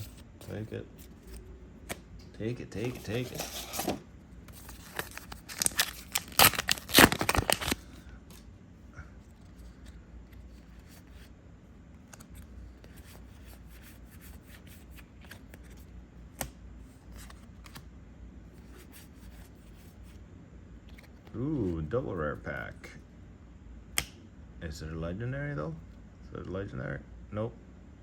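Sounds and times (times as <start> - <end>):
wrapper tearing and crinkling: 4.6 - 7.9.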